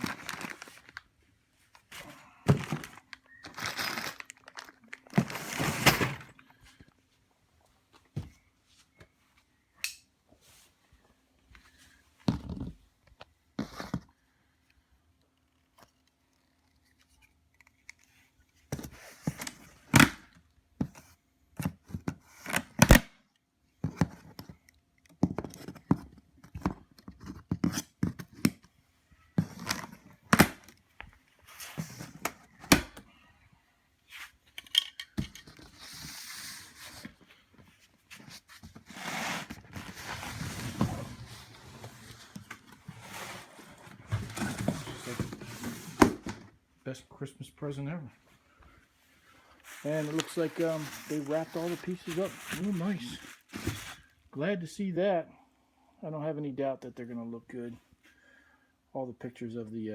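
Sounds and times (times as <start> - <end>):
packing material rustling: 0.0 - 1.1, 1.9 - 6.4, 49.5 - 54.2.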